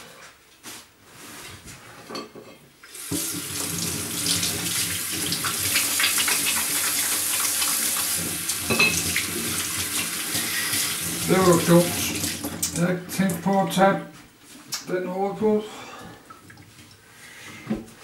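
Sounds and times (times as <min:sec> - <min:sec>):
tap water splashing into sink: 0:03.0 - 0:12.8.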